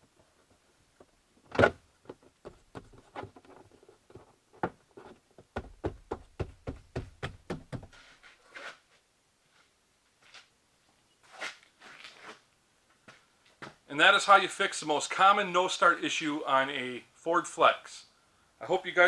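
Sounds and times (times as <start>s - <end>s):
knocking rubber door molding: 5.4s - 8.0s
soft rustle: 6.9s - 13.8s.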